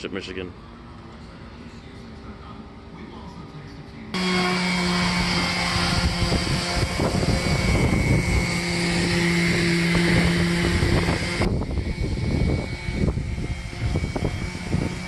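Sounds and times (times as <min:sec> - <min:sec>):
power tool stripping paint: 0:04.2 - 0:15.0.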